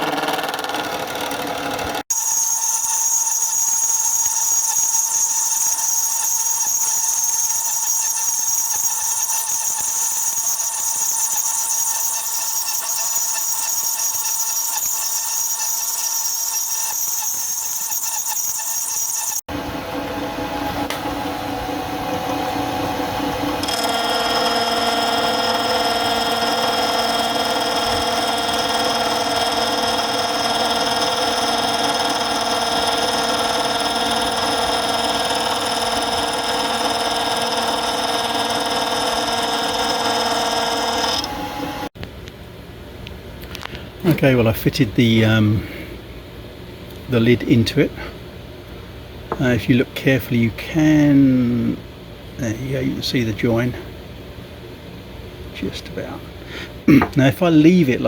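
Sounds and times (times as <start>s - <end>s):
louder machine whining: 0.0s - 42.0s
machine tool whining: 0.0s - 42.0s.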